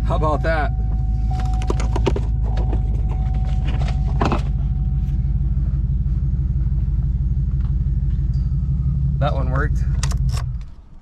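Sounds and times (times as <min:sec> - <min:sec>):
thin steady tone: 0:00.0 - 0:09.9
truck engine idling: 0:00.0 - 0:11.0.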